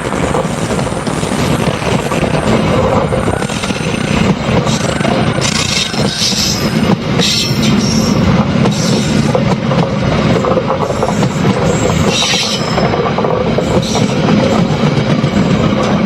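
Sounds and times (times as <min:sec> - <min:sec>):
train rumbling along track: 0:00.0 - 0:16.0
high wheel squeals: 0:10.9 - 0:12.9.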